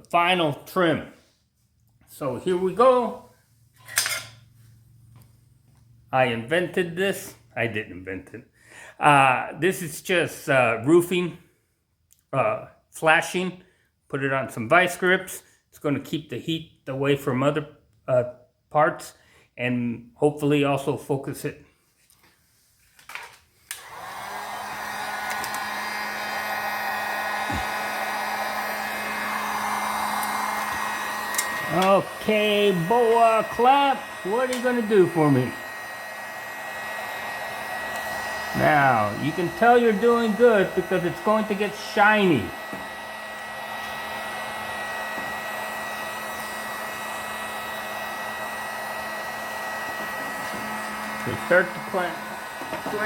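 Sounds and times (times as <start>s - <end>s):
heat gun fan humming: 23.7s - 53.0s.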